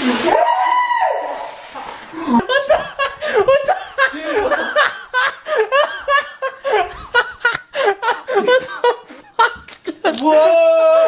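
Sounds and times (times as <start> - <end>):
people laughing: 2.2 - 10.4.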